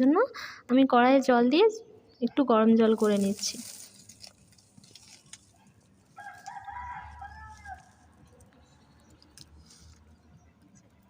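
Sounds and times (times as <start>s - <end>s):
rooster crowing: 6.2s - 7.9s.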